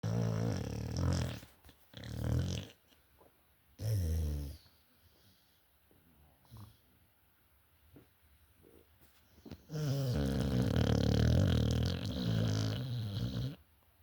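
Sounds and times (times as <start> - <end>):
dog snoring: 0.0 - 2.8, 3.8 - 4.7, 9.5 - 13.6.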